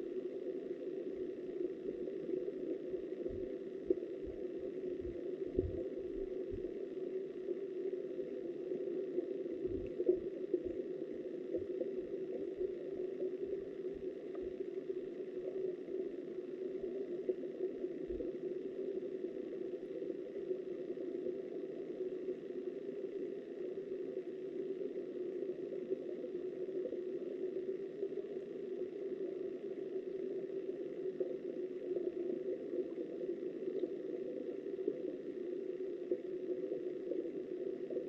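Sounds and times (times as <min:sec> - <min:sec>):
muffled underwater river rushing: 0:00.0 - 0:38.0
soft low thumps: 0:03.2 - 0:03.5, 0:04.2 - 0:06.7, 0:09.6 - 0:10.8.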